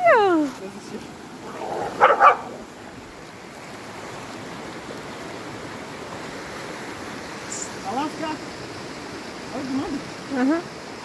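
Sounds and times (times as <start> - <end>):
creek rushing: 0.0 - 11.0
dog barking: 1.5 - 2.7.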